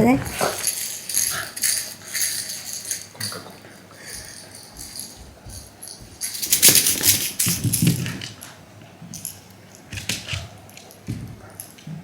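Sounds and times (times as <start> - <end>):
pets scuffling with jingling: 0.0 - 8.6.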